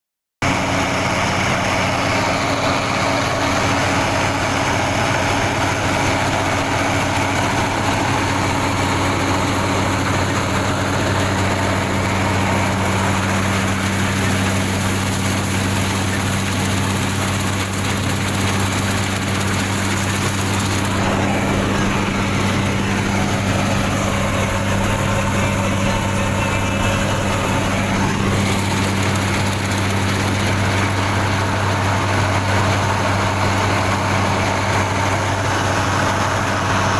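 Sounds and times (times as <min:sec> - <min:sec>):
combine harvester running: 0:00.4 - 0:36.9.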